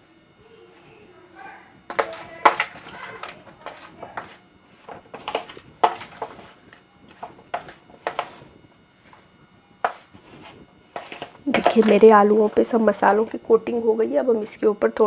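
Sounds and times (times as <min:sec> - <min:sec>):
potatoes knocking in a vessel: 0:01.9 - 0:08.4, 0:10.9 - 0:13.2.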